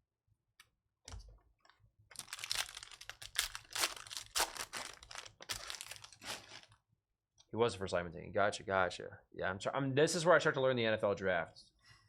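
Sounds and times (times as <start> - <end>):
card pack wrapper crinkling: 2.1 - 6.8.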